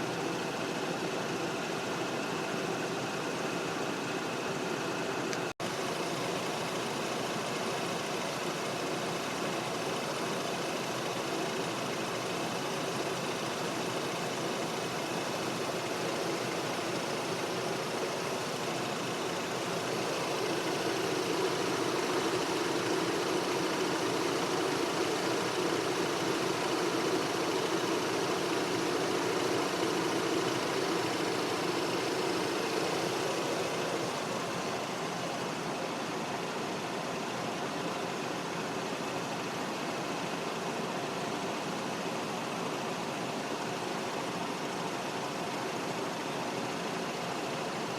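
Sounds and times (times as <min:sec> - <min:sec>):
rotary engine running: 0:13.6 - 0:34.9.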